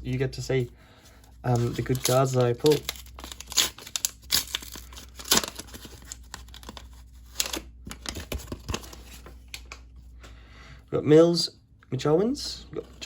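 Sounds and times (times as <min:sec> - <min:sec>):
wrapper tearing and crinkling: 0:01.5 - 0:09.1.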